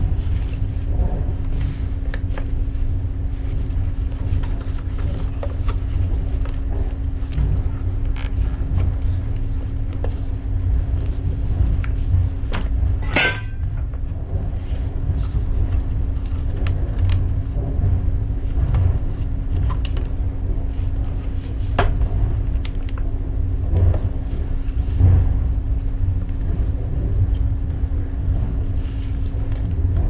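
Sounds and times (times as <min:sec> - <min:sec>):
constant hum: 0:00.0 - 0:30.0
hard objects clicking and knocking: 0:13.0 - 0:14.0.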